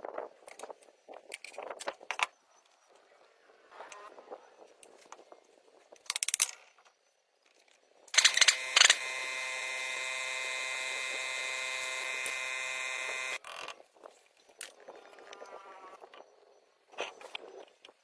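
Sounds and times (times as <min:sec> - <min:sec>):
small motor humming: 0:08.1 - 0:13.4.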